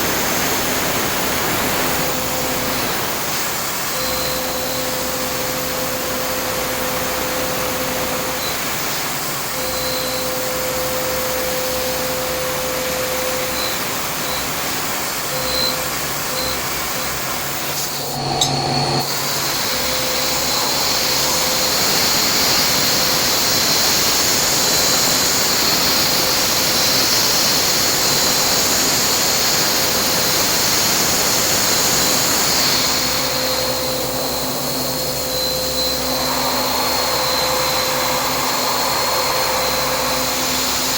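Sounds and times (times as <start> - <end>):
milling machine humming: 0.0 - 40.9
compressed air hissing: 31.2 - 40.9
steady cutting tone: 31.9 - 40.9.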